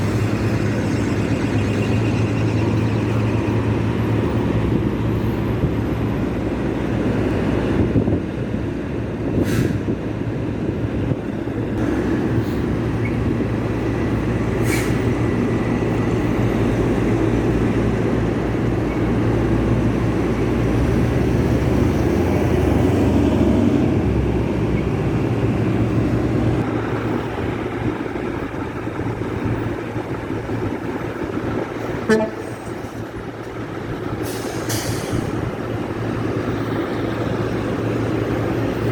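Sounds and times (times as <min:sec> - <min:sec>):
diesel truck engines rumbling: 0:00.0 - 0:38.9
short hisses: 0:14.6 - 0:15.0.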